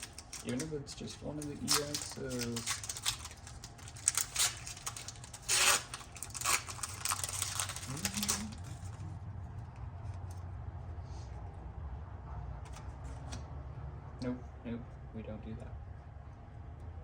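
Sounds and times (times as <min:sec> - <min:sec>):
foil wrapper tearing and crinkling: 0:00.0 - 0:09.0.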